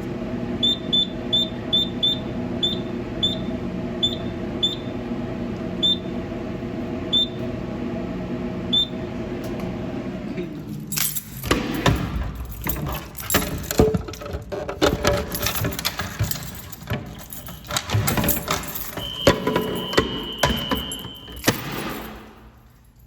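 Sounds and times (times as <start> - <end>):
fire alarm panel beeps: 0.6 - 5.0, 5.8 - 6.1, 7.1 - 7.4, 8.7 - 9.0, 18.4 - 22.0.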